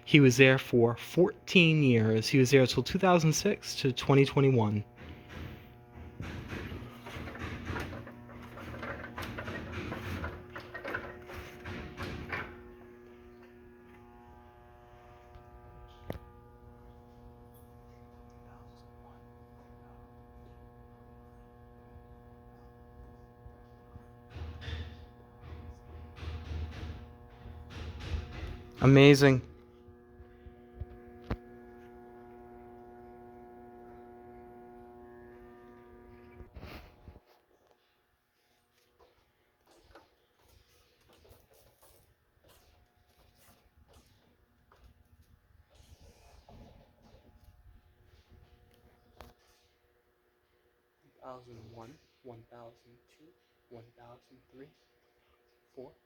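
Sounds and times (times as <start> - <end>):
steady electrical hum: 0.0 - 37.3.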